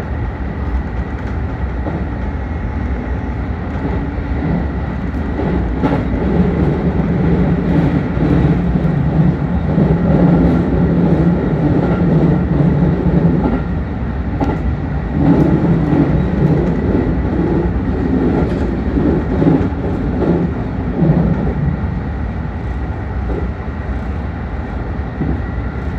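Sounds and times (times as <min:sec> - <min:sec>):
train wheels rumbling on rails: 0:00.0 - 0:25.9
track clicks and knocks: 0:22.7 - 0:25.9.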